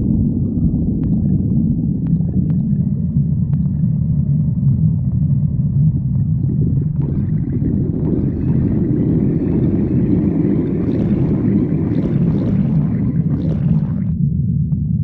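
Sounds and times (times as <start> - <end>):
stomach growling: 0.0 - 14.2
low steady rumble: 0.0 - 15.0.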